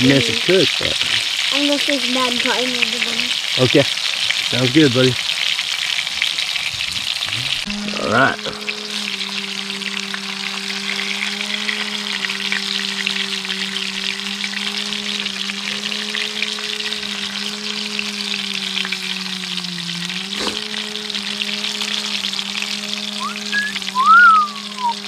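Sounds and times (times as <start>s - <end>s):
fish frying in hot oil: 0.0s - 25.0s
low hum: 7.3s - 25.0s.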